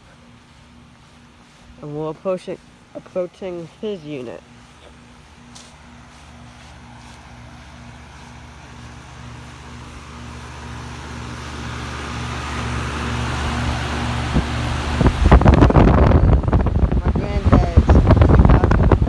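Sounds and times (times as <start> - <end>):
compressor hum: 0.0 - 19.0
condenser fan rushing: 0.0 - 19.0
air gusts buffeting microphone: 6.4 - 19.0.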